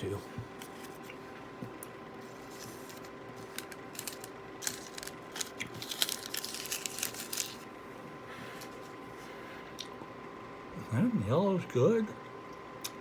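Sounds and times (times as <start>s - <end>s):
faint steady hum: 0.0s - 13.0s
paper wrapper crinkling: 2.2s - 7.7s.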